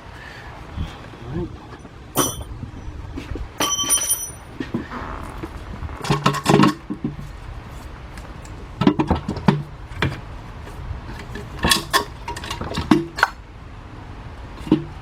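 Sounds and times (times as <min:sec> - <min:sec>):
metal tools clinking: 0:01.7 - 0:02.6, 0:03.6 - 0:04.8.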